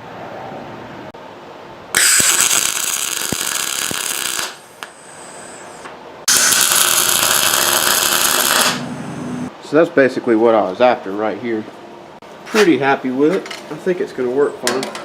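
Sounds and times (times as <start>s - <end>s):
welding arc crackling: 1.9s - 9.5s.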